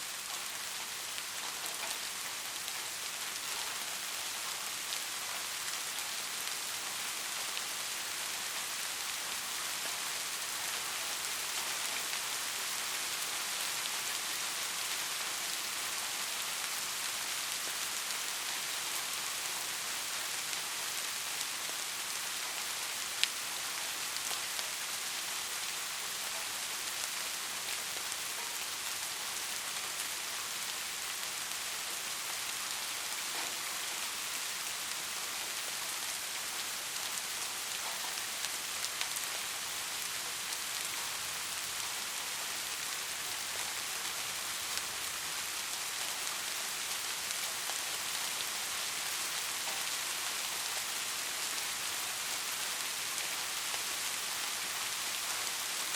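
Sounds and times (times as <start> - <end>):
soft rain falling: 0.0 - 55.9.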